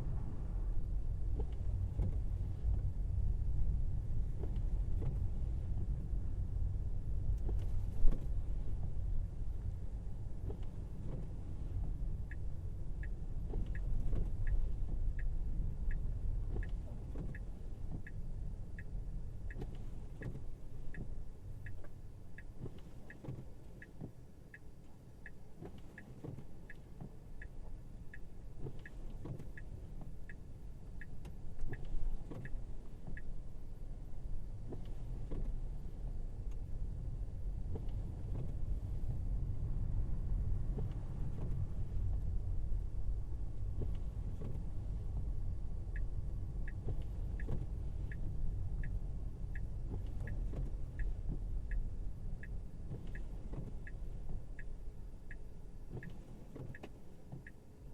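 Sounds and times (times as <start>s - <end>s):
turn signal ticking: 1.1s - 6.2s, 7.1s - 57.9s.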